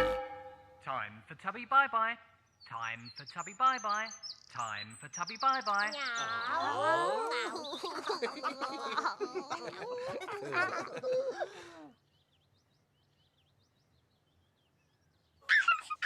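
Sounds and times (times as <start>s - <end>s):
character voices giggling and babbling: 5.8s - 11.9s, 15.5s - 16.0s.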